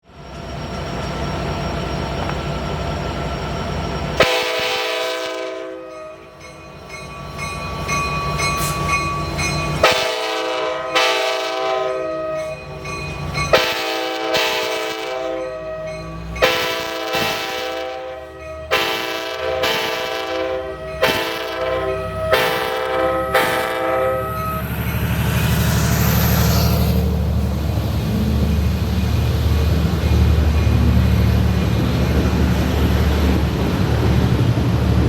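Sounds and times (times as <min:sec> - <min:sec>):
diesel locomotive rumble: 0:00.0 - 0:06.4, 0:16.0 - 0:35.0
train air horn blasts: 0:04.2 - 0:05.9, 0:09.8 - 0:12.4, 0:13.5 - 0:24.7.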